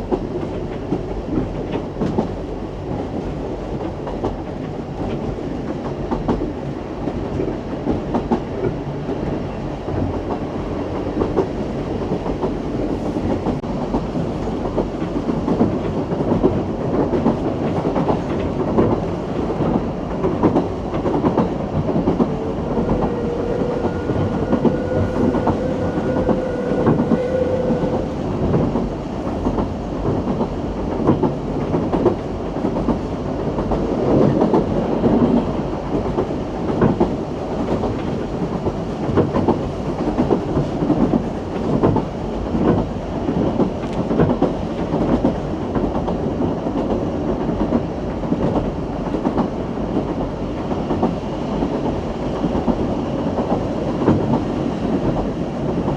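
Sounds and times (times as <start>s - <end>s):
train rumbling along track: 0.0s - 55.9s
steady tone: 22.2s - 28.4s.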